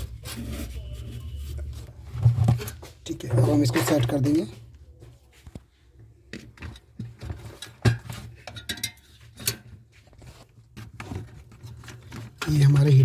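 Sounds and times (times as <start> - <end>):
tools and parts clinking: 2.3 - 4.6, 6.3 - 9.8.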